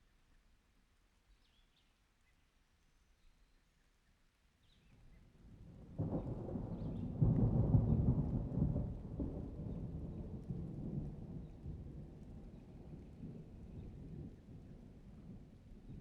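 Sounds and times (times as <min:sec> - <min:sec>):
thunder rumbling: 0:05.8 - 0:16.0.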